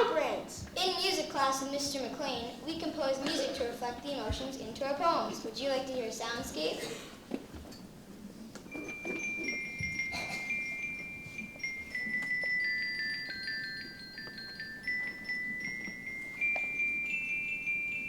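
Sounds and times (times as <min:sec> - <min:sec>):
tuned metal percussion notes: 0:08.7 - 0:18.0.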